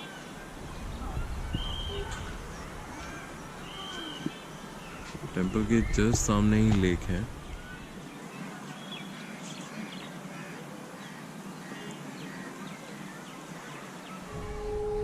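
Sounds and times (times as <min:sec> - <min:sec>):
faint bird chirps: 0:00.0 - 0:06.3.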